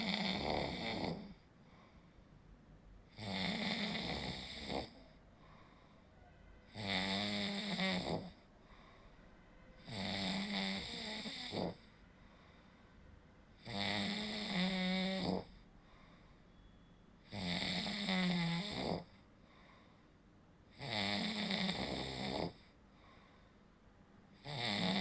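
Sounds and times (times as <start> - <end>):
person snoring: 0.0 - 1.4, 3.1 - 5.2, 6.7 - 8.4, 9.8 - 11.9, 13.6 - 15.6, 17.3 - 19.2, 20.8 - 22.7, 24.4 - 25.0
quiet breathing: 0.0 - 3.2, 4.2 - 6.7, 7.3 - 9.8, 10.8 - 13.6, 15.4 - 17.2, 19.0 - 20.7, 22.5 - 24.1.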